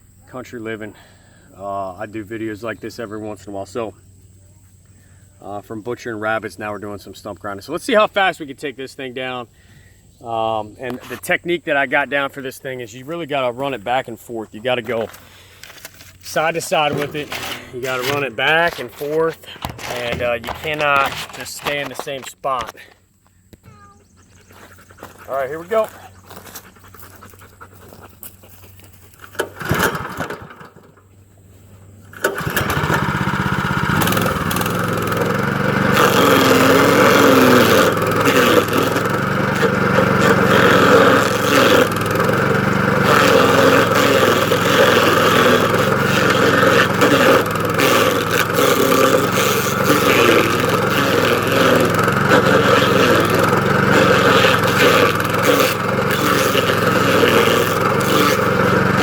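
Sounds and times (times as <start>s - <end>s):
cutter wheel grinding: 14.9s - 22.7s, 23.7s - 28.2s, 29.1s - 30.9s, 32.0s - 59.0s
petrol engine running: 16.4s - 21.1s, 29.3s - 31.0s, 32.0s - 59.0s.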